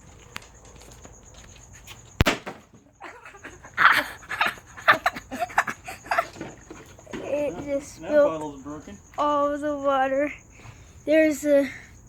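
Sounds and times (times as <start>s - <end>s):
firecracker bang in water jug: 2.2s - 2.9s.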